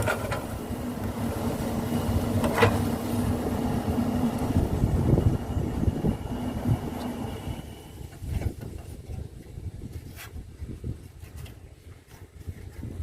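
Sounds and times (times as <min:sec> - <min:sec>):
diesel engine running: 0:00.0 - 0:08.6.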